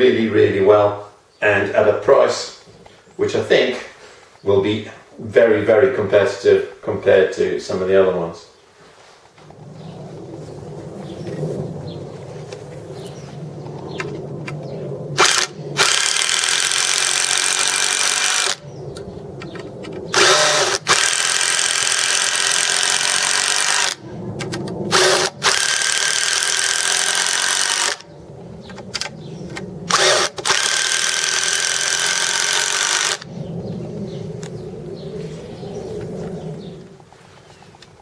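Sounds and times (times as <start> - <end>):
cordless power tool running: 15.2 - 18.6, 20.1 - 24.0, 24.9 - 28.0, 29.9 - 33.3.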